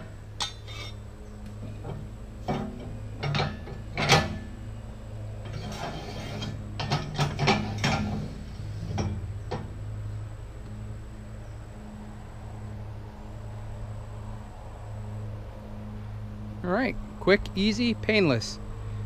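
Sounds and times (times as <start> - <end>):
low steady hum: 0.0 - 19.0
metal clanking and rattling: 1.6 - 4.6, 5.4 - 9.8.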